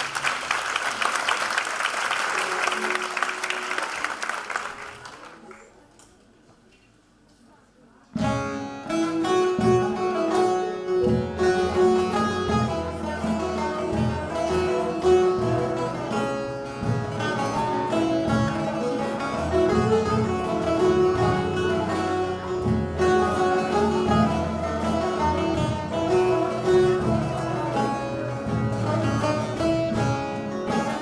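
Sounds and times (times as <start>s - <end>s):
folk ensemble on plucked strings: 0.0s - 0.8s, 8.1s - 31.0s.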